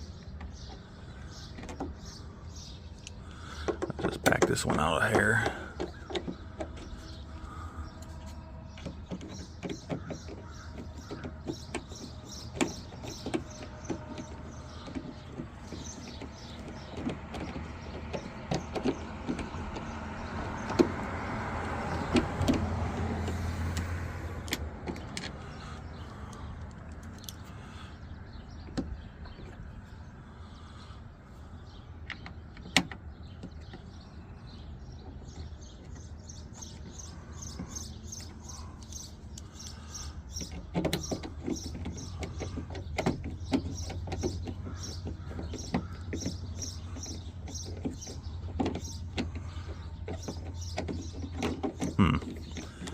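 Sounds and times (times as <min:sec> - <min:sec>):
tools clicking against truck door: 0:03.0 - 0:07.2, 0:08.0 - 0:25.6, 0:26.2 - 0:27.5, 0:34.9 - 0:52.9.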